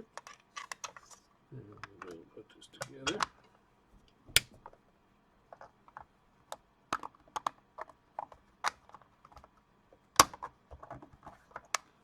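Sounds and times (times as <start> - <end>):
plastic parts clicking and knocking: 4.0 - 4.7.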